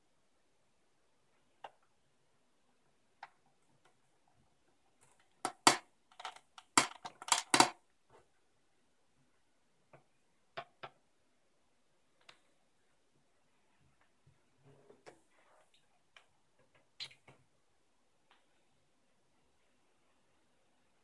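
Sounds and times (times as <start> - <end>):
small hard objects clicking: 5.4 - 7.8.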